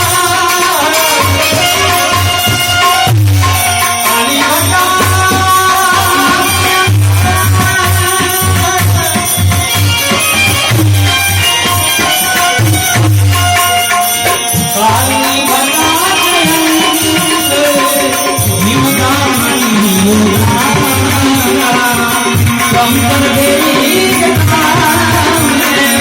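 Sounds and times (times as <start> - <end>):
gliding devotional melody: 0.0 - 26.0
steady drum beat: 0.0 - 26.0.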